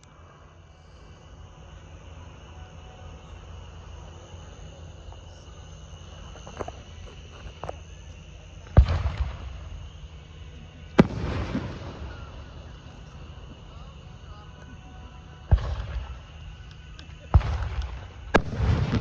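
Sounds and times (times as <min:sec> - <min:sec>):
insect chorus: 0:00.0 - 0:19.0
fireworks bangs and crackling: 0:08.6 - 0:14.3, 0:15.4 - 0:19.0.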